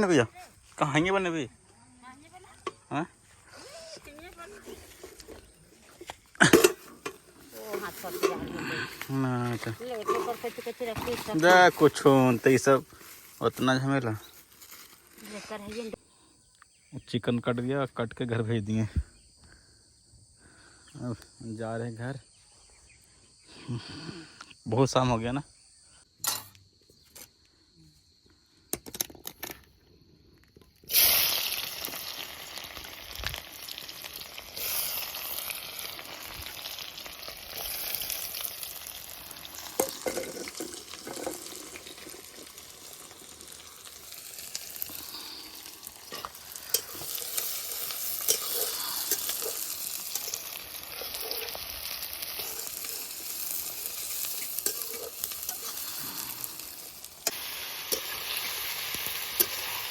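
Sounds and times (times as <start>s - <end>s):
food sizzling in a hot pan: 6.5s - 16.0s, 30.9s - 59.9s.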